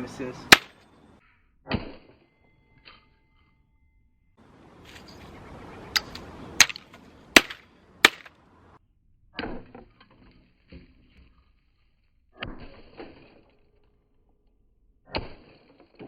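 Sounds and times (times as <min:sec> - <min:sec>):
rustling scrape: 0:04.7 - 0:05.4, 0:10.1 - 0:12.2.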